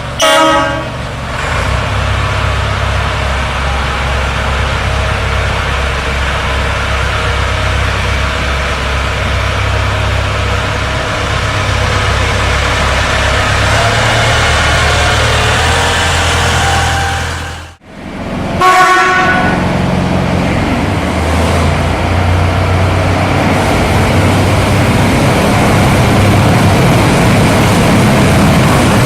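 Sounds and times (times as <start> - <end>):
locomotive engine hum: 0.0 - 29.0
short horn toot: 0.2 - 0.9.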